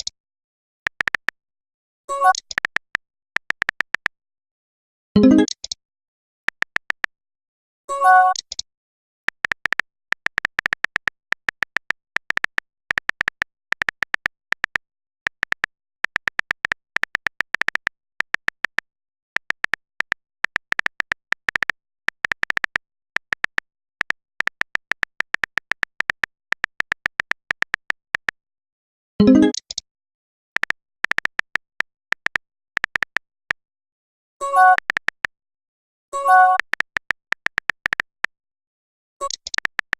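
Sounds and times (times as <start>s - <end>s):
keyboard typing clicks: 0.9s - 1.4s, 2.1s - 4.2s, 5.2s - 5.8s, 6.5s - 7.1s, 7.9s - 8.6s, 9.3s - 28.4s, 29.2s - 29.8s, 30.6s - 33.4s, 34.4s - 35.4s, 36.2s - 38.3s, 39.2s - 39.9s.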